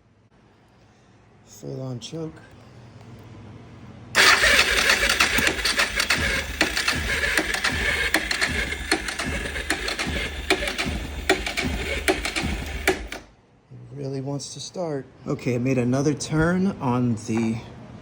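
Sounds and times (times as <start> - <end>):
motorcycle engine cranking: 4.2 - 13.3.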